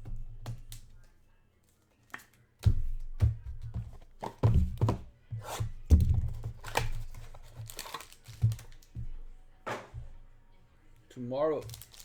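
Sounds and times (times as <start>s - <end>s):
cards thumping and tapping on table: 2.6s - 10.2s
wrapper rustling: 6.6s - 8.9s, 11.5s - 12.0s.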